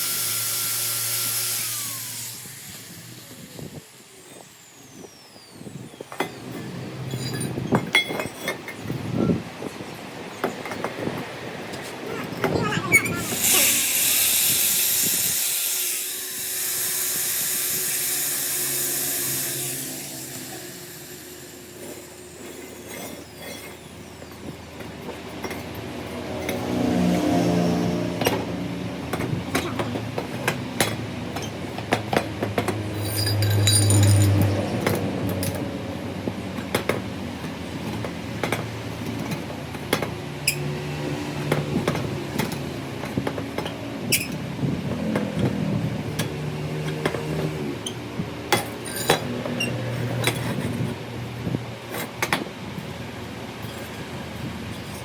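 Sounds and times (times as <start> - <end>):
low mechanical hum: 0.0 - 9.8, 12.2 - 25.8
sharp metal clinks and knocks: 32.9 - 34.5.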